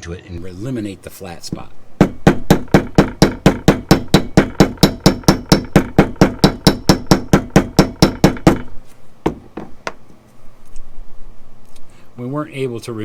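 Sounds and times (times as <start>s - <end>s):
hammer tapping copper rivet: 0.8s - 10.2s.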